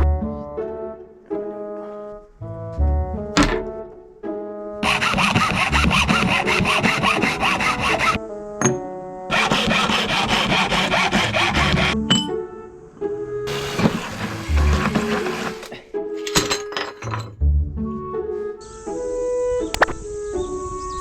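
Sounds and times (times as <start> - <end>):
background music: 0.0 - 21.0
hand saw cutting: 4.8 - 8.2, 9.3 - 12.0, 13.5 - 15.8.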